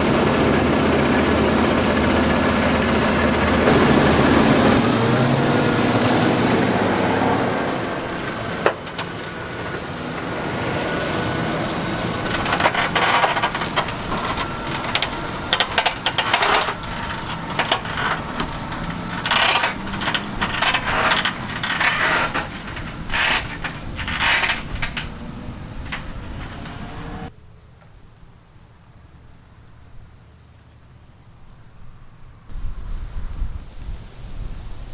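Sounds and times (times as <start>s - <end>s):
harvest machinery humming: 0.0s - 27.3s
rattling and crunching: 0.0s - 27.3s.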